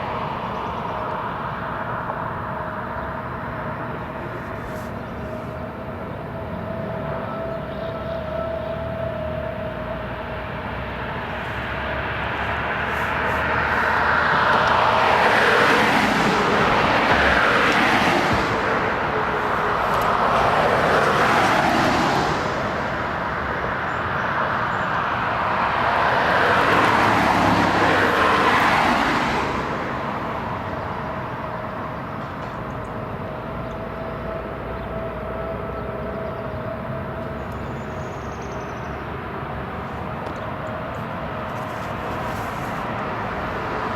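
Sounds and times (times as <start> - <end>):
road traffic passing: 0.0 - 43.9.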